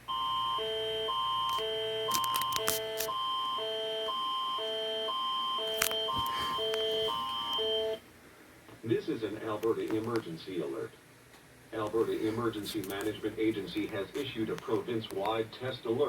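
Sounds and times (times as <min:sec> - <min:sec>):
steady high tone: 0:00.1 - 0:08.0
static crackles: 0:08.8 - 0:16.0.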